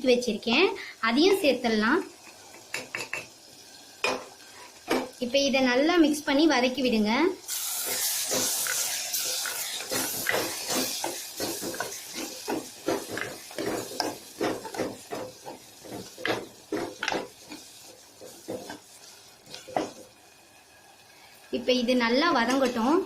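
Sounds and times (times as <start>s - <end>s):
food sizzling in a pan: 0.0s - 23.0s
spatula stirring and scraping: 7.6s - 20.1s.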